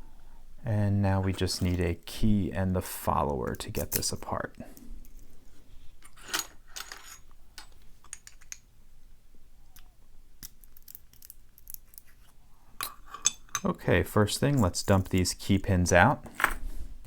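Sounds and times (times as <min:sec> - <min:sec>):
metal clicks and scraping in padlock: 0:10.4 - 0:12.2.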